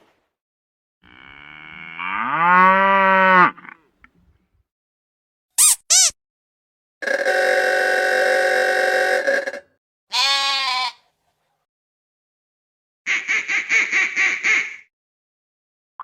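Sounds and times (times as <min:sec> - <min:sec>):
lamb bleating: 0:10.1 - 0:11.0
duck quacking: 0:13.1 - 0:14.9.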